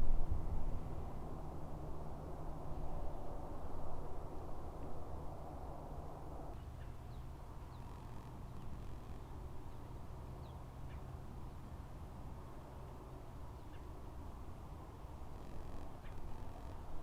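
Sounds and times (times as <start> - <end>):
low background rumble: 0.0 - 6.6.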